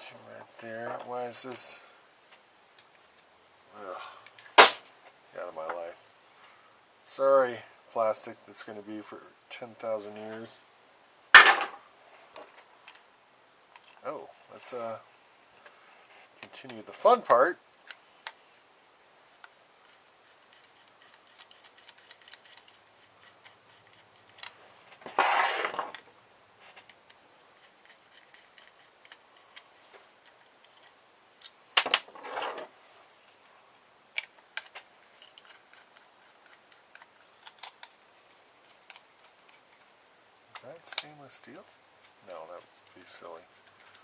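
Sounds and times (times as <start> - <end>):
screwdriver clicking on metal parts: 20.5 - 24.6, 26.8 - 31.9, 34.2 - 38.0.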